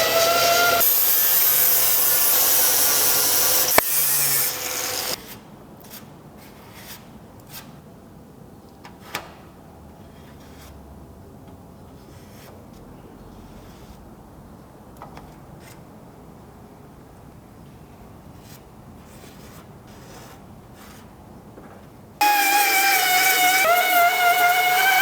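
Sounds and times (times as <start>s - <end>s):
power sander rasping: 0.0s - 5.2s, 22.2s - 25.0s.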